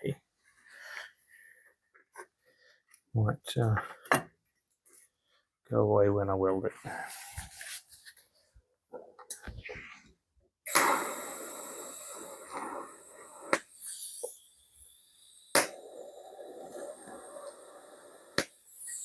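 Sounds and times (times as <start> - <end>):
welding arc hissing: 10.7 - 19.0.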